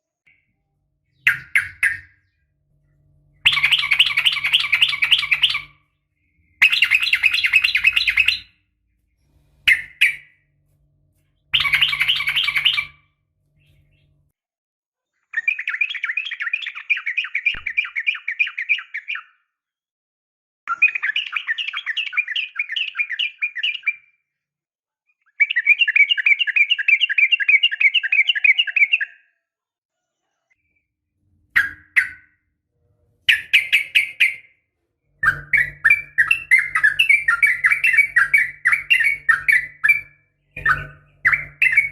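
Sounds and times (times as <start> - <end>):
bird chattering call: 3.4 - 5.8, 6.6 - 8.5, 11.5 - 13.0.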